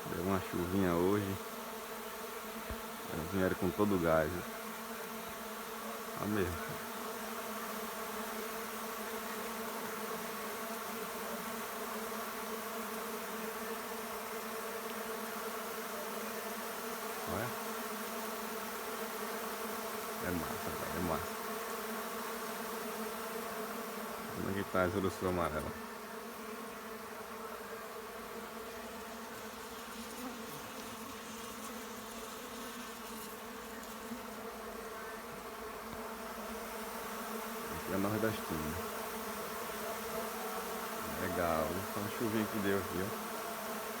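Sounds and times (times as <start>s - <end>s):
bees buzzing: 0.0s - 44.0s.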